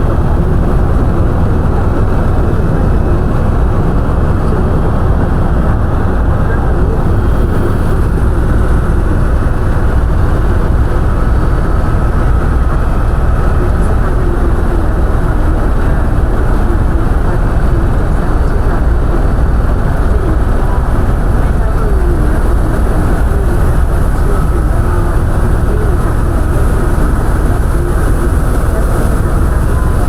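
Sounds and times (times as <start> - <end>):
helicopter engine and rotor rumble: 0.0 - 30.0.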